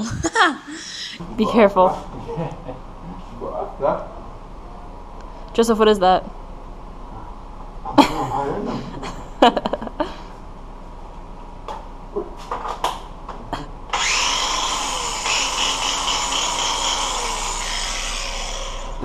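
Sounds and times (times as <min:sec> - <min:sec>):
power tool whining: 0:13.9 - 0:19.0.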